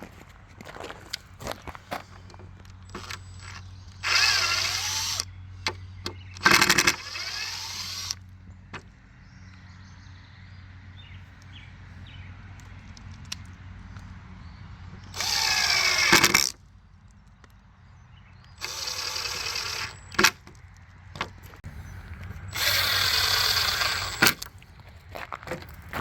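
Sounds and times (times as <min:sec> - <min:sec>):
drill click: 0:02.3 - 0:08.2, 0:15.0 - 0:16.6, 0:18.4 - 0:20.6, 0:22.5 - 0:24.6
power drill running: 0:02.8 - 0:05.3, 0:06.1 - 0:08.2, 0:15.0 - 0:16.6, 0:18.6 - 0:20.4, 0:22.5 - 0:24.5.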